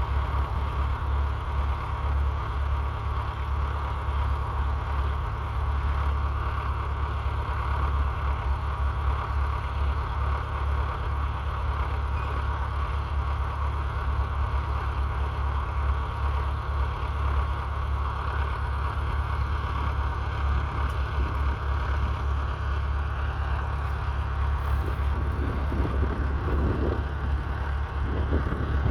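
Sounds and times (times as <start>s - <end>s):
diesel engine running: 0.0s - 28.9s
wind buffeting microphone: 23.4s - 28.9s.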